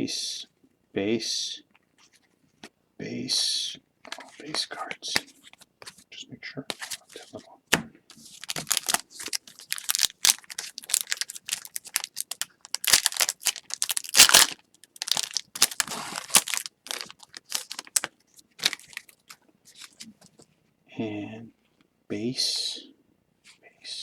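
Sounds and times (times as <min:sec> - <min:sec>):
wrapper crinkling and tearing: 0:08.1 - 0:20.1.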